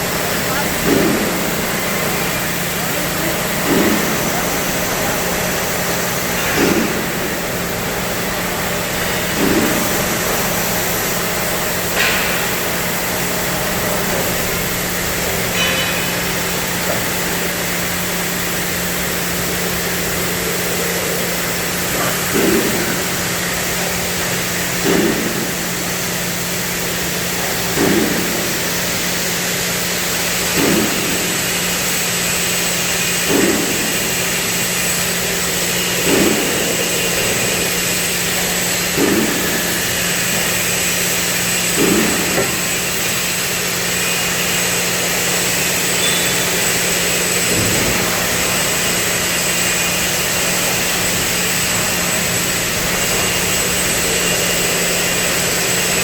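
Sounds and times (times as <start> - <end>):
cutting machine hissing and humming: 0.0 - 56.0.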